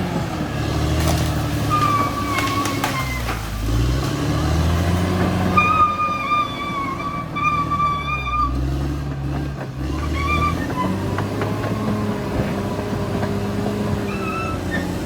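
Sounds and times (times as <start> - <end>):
bulldozer diesel engine: 0.0 - 15.0
short high-pitched squeals: 5.6 - 8.6.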